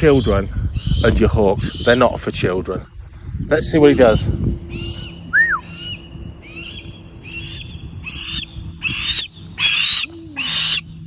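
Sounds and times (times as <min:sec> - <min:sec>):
hawk rasping calls: 0:04.7 - 0:10.9.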